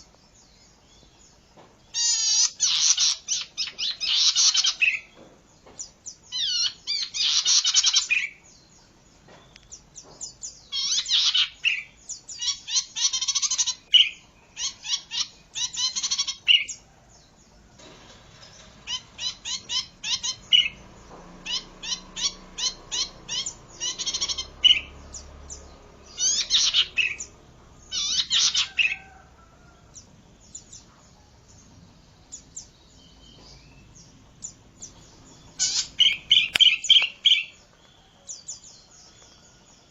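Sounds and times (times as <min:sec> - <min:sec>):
bird singing whistled trills: 0:32.3 - 0:39.9.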